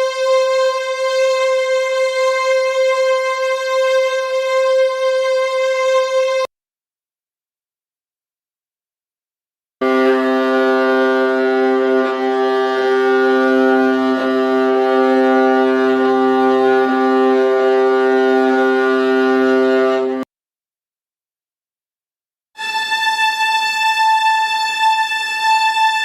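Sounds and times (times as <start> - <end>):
viola bowing low note: 9.8 - 20.2.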